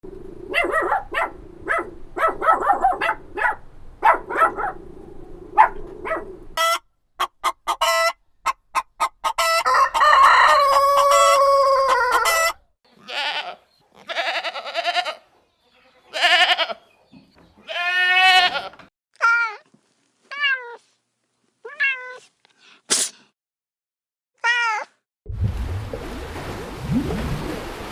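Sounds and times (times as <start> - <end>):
chickens clucking: 6.6 - 12.6
rooster crowing: 9.2 - 12.6
goats bleating: 13.0 - 15.2, 16.1 - 16.8, 17.6 - 18.8.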